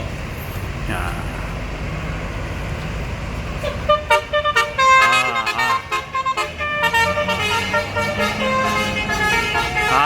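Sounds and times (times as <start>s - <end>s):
low engine rumble: 0.0s - 10.0s
musical bus horn toots: 3.6s - 10.0s.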